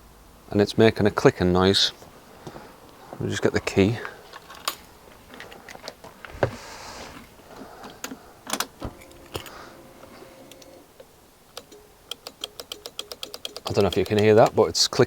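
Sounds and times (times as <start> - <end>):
keys clicking and knocking: 7.7 - 10.8, 11.5 - 14.6.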